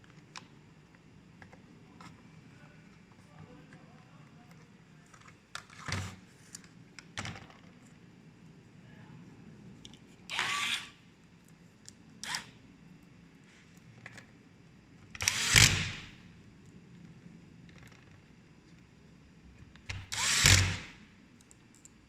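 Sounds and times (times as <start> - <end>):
light clicks and handling noises: 0.0 - 10.2, 12.9 - 14.4
small electric motor running: 10.3 - 11.0, 15.2 - 16.1, 19.9 - 21.0.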